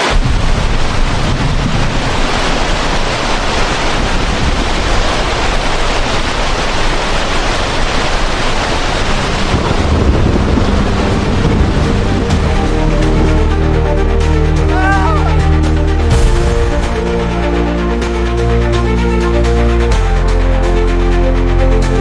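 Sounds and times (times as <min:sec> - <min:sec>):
loud steady rushing noise: 0:00.0 - 0:22.0
music: 0:09.0 - 0:22.0.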